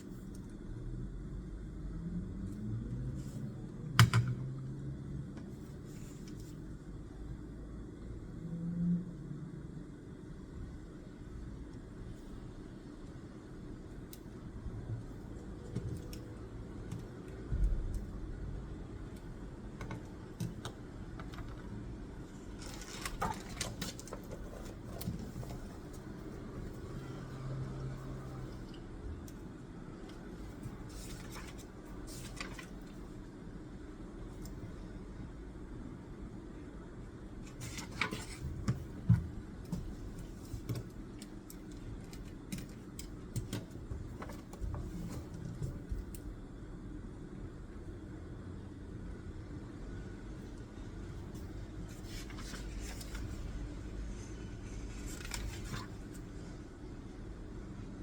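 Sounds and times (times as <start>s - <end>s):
low background hum: 0.0s - 58.0s
desk work clicks and taps: 3.9s - 4.6s, 37.6s - 46.2s
paper rustling: 22.6s - 26.2s, 30.5s - 32.9s, 37.5s - 39.0s, 51.4s - 53.6s, 55.1s - 56.2s.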